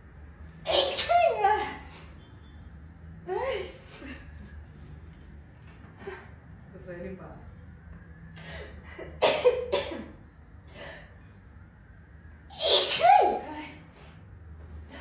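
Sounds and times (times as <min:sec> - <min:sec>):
person sneezing: 0:12.5 - 0:13.3.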